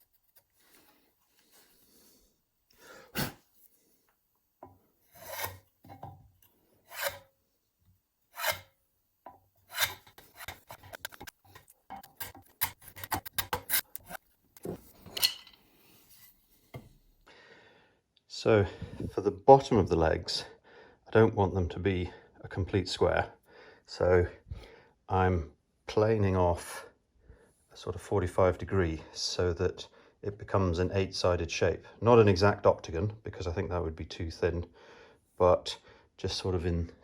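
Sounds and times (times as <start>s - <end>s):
hand plane shaving wood: 5.1s - 5.6s, 6.9s - 7.3s, 8.3s - 8.7s, 9.7s - 11.6s.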